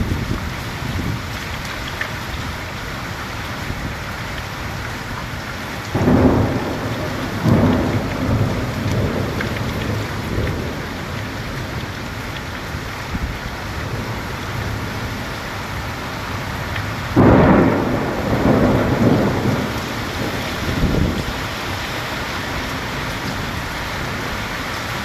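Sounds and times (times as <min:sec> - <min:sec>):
heavy rain: 0:00.0 - 0:25.0
thunder rolling: 0:05.9 - 0:11.3, 0:17.1 - 0:21.9.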